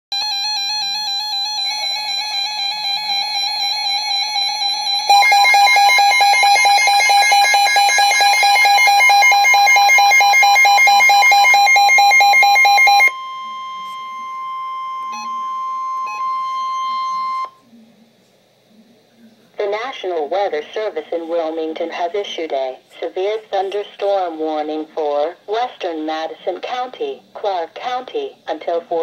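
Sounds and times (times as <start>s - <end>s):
steady single-pitch alarm tone: 0.1s - 17.6s
pulsing multi-tone alert beep: 0.2s - 17.5s.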